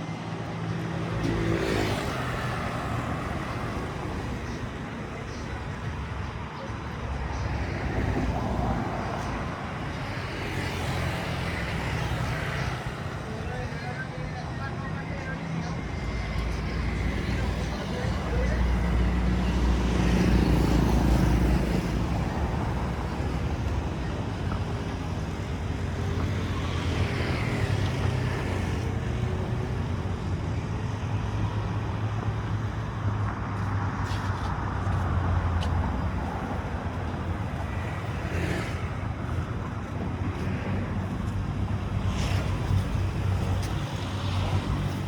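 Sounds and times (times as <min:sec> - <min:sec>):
traffic engine rumble: 0:00.0 - 0:45.0.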